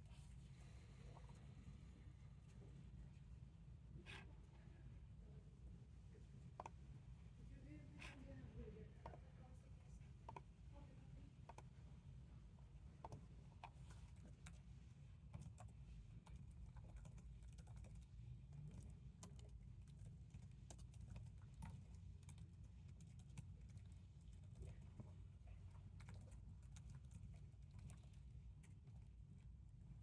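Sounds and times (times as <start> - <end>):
low room hum: 0.0 - 30.0
computer keyboard typing: 15.3 - 18.1, 18.7 - 24.8.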